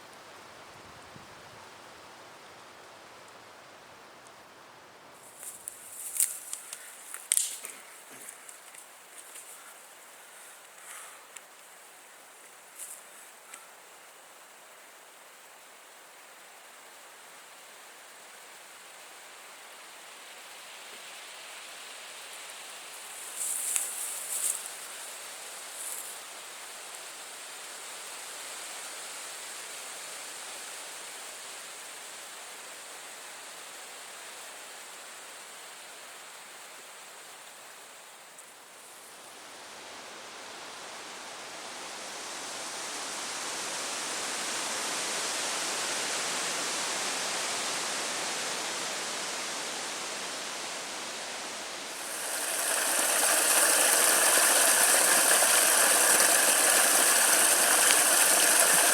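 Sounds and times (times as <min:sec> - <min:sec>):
rushing outdoor noise: 0:41.4 - 0:58.9.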